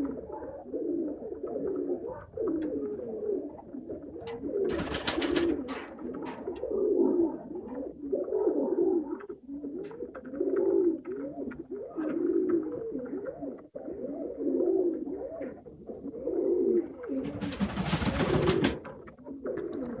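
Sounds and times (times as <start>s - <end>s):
pigeons cooing: 0.0s - 20.0s.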